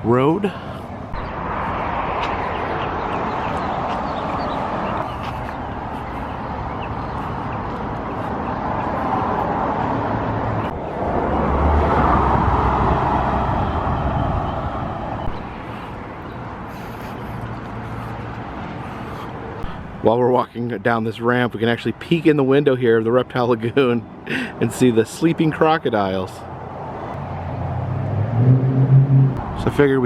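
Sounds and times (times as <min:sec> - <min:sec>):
vehicle passing with low rumble: 0:00.0 - 0:16.9, 0:26.5 - 0:30.0
passing traffic: 0:00.0 - 0:30.0.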